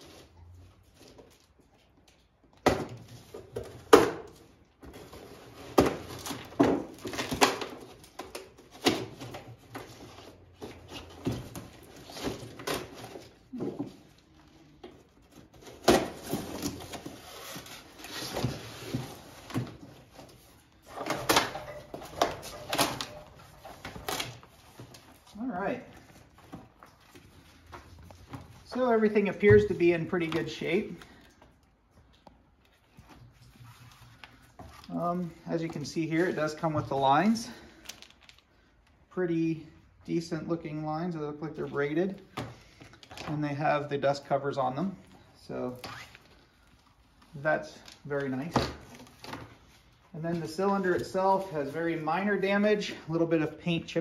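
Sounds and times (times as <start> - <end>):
packaging rustling: 4.9 - 39.0
knocks and clatters of parts: 20.8 - 25.1.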